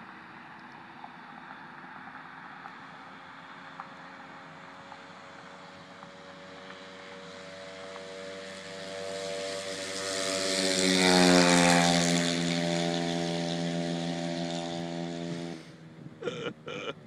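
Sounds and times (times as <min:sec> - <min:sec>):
vehicle engine passing at speed: 0:01.4 - 0:16.2.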